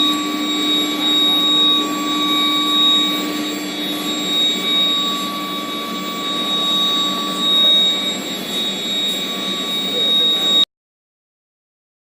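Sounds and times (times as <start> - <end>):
rushing machine noise: 0.0 - 10.6
constant machine whining tones: 0.0 - 10.7.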